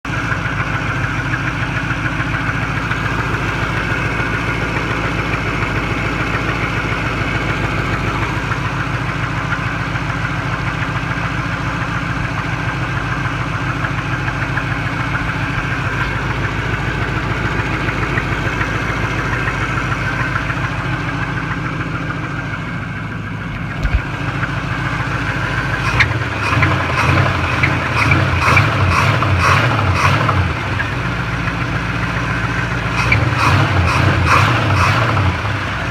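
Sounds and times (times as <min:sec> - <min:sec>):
engine idling with knock: 0:00.1 - 0:35.9.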